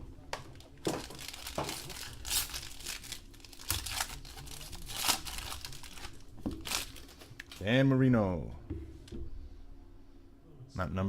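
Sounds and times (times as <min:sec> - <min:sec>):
cards being handled: 0:00.4 - 0:07.6
card packaging crinkling: 0:00.5 - 0:07.7.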